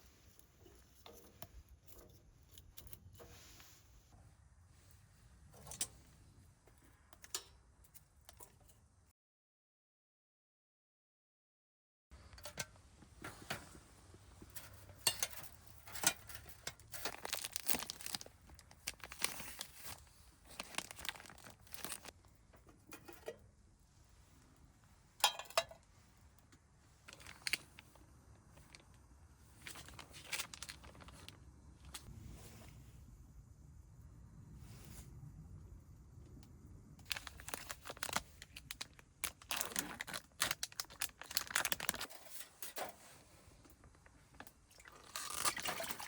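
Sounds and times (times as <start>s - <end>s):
plastic packaging crinkling: 14.6s - 22.2s, 27.0s - 28.0s, 29.6s - 32.1s, 37.0s - 42.6s, 43.8s - 46.0s.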